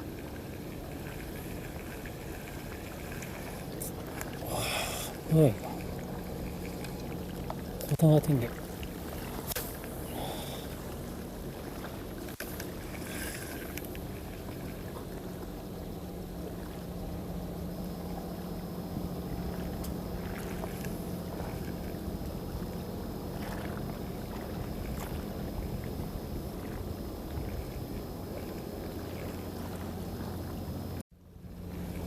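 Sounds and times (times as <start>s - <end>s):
background hiss: 0.0s - 14.4s
low engine hum: 0.0s - 32.0s.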